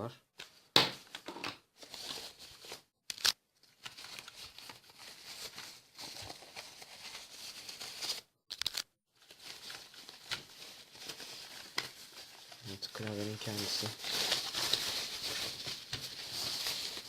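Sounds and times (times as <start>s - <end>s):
plastic packaging crinkling: 1.8s - 17.0s.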